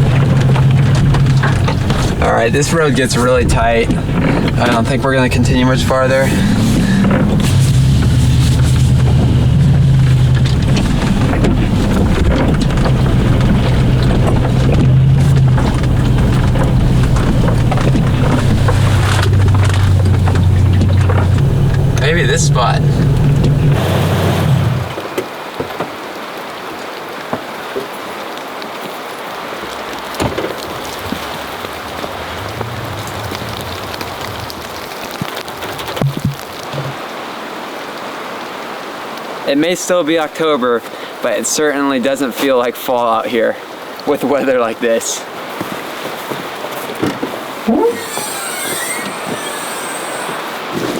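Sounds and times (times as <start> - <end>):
drops ticking: 0.0 - 25.0
dull knocks: 0.0 - 25.0
engine low drone: 0.0 - 25.0, 30.0 - 35.4
low hum: 0.0 - 25.0
tyres crackling over rough track: 0.0 - 25.8, 27.6 - 37.2, 39.5 - 50.9
steady rain hiss: 0.0 - 46.9, 47.5 - 50.9.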